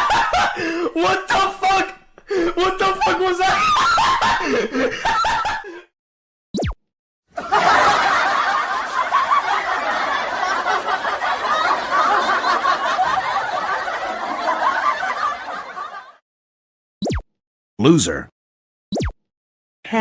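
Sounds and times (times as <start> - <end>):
canned laughter: 0.0 - 5.9, 7.4 - 16.2.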